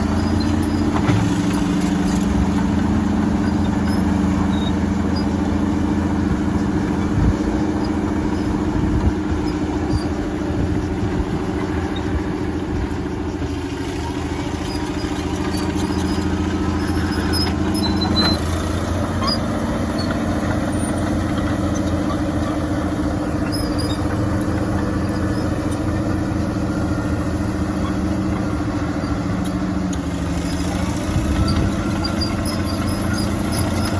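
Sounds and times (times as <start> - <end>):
loader diesel engine running: 0.0 - 33.9.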